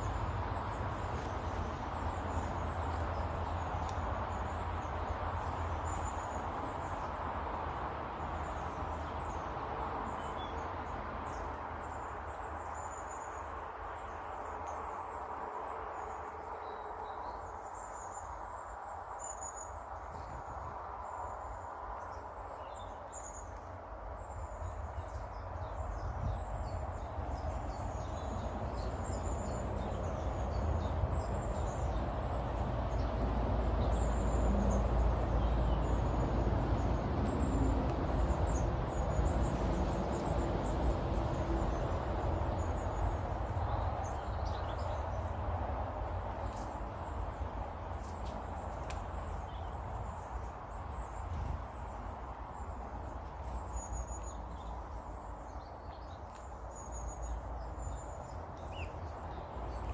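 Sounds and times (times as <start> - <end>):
small birds chirping: 16.0 - 59.9.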